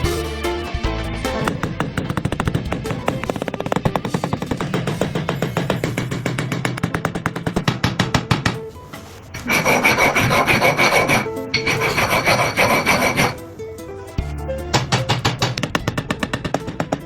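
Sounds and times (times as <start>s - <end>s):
plucked guitar background music: 0.0s - 1.9s, 13.4s - 17.0s
abrasive grinding on glass: 9.4s - 13.4s.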